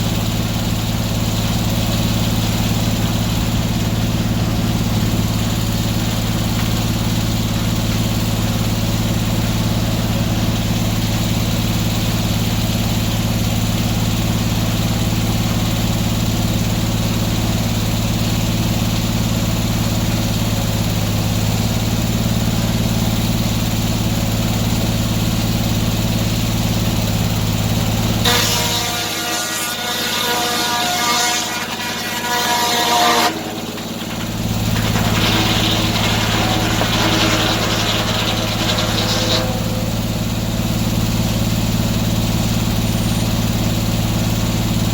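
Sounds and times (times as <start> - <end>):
sawmill engine hum: 0.0 - 44.9
high whining ringing tones: 28.3 - 41.1.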